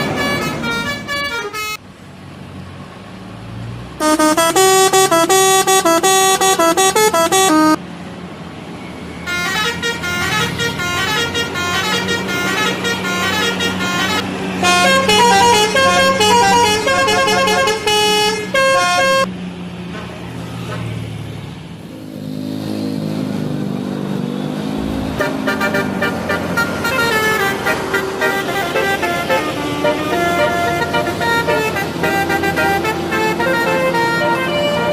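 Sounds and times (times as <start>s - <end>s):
melodic multi-tone air horns: 0.0s - 1.8s, 4.0s - 7.8s, 9.3s - 19.3s, 24.9s - 34.9s
bus engine: 0.0s - 34.9s
road noise: 0.0s - 34.9s.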